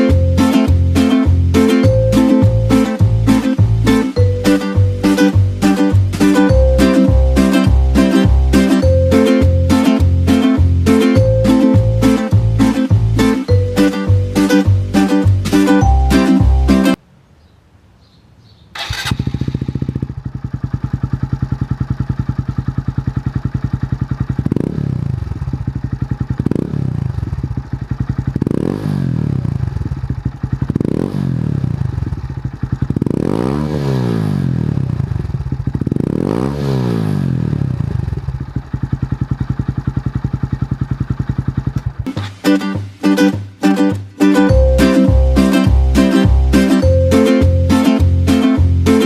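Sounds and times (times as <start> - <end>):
motorcycle engine idling and revving: 0.0 - 16.0, 18.8 - 43.0.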